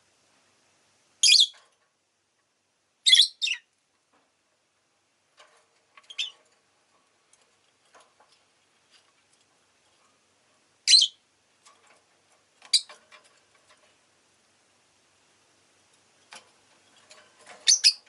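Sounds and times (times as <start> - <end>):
lovebird chirping: 1.2 - 1.6, 3.0 - 3.7, 6.1 - 6.4, 10.8 - 11.2, 12.7 - 12.9, 17.6 - 18.0.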